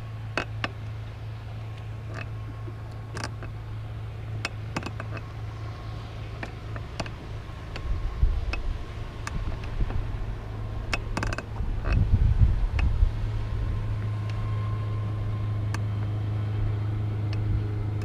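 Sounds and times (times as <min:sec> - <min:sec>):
steady low hum: 0:00.0 - 0:18.0
wind buffeting microphone: 0:06.6 - 0:18.0.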